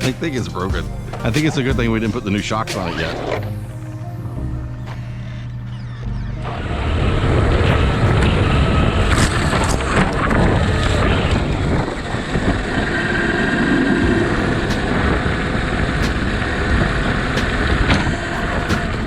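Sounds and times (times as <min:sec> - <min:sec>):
electric motor and gear whine: 0:00.0 - 0:19.0
tyres rumbling on rough ground: 0:06.4 - 0:19.0.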